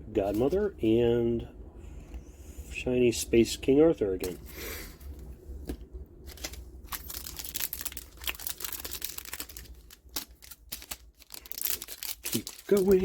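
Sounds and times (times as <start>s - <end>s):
foil wrapper crinkling: 6.3s - 13.0s.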